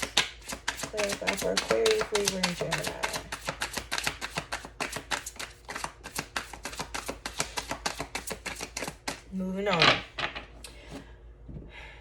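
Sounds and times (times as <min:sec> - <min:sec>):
cards being shuffled: 0:00.0 - 0:09.2.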